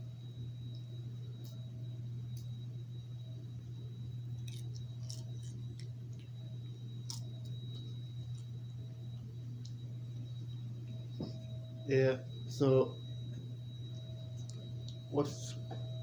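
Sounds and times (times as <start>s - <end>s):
low electrical hum: 0.0s - 16.0s
popcorn being chewed: 4.1s - 11.5s, 13.9s - 16.0s.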